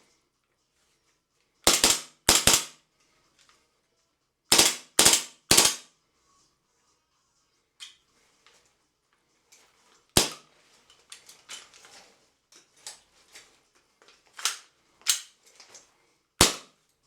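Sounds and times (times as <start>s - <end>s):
plastic magazine clacks: 14.0s - 15.8s.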